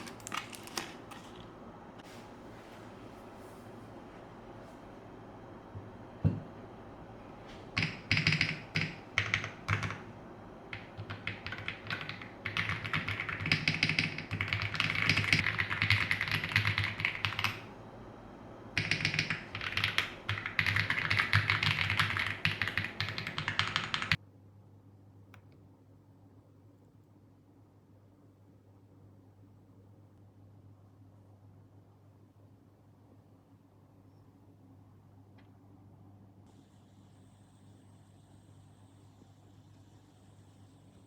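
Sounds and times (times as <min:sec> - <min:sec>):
mechanical keyboard typing: 0:00.0 - 0:01.4, 0:07.7 - 0:10.1, 0:10.7 - 0:17.7, 0:18.8 - 0:24.2.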